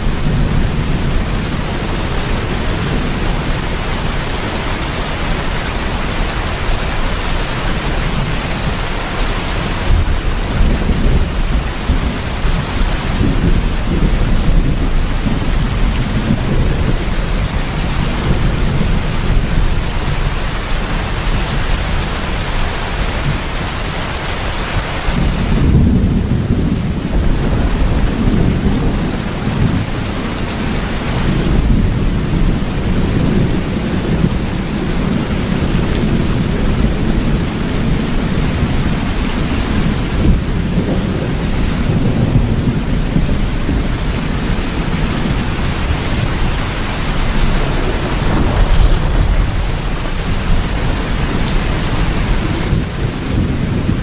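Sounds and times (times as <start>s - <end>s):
steady rain: 0.0s - 54.0s
deep low rumble: 47.4s - 52.5s.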